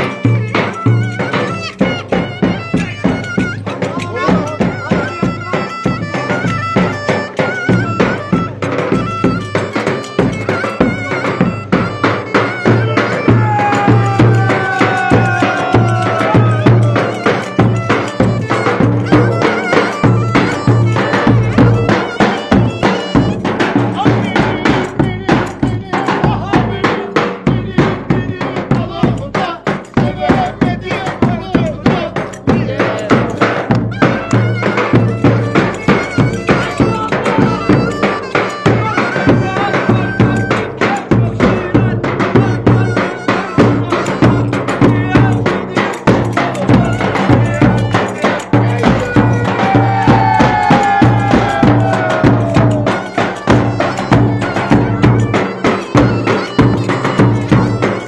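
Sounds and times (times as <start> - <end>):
melody instrument playing: 0.0 - 24.9, 43.1 - 58.0
fast folk drumming: 0.0 - 58.0.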